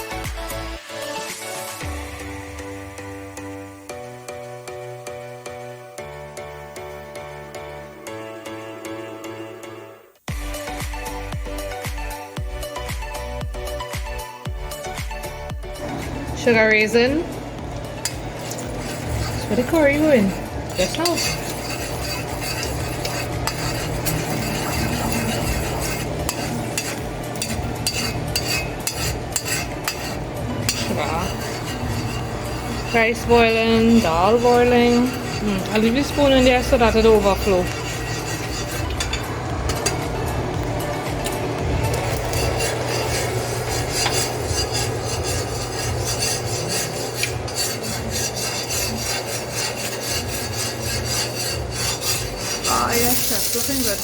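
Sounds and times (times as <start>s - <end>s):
sugar sizzling in oil: 15.7s - 54.0s
spoon scraping bottom of pot: 15.8s - 54.0s.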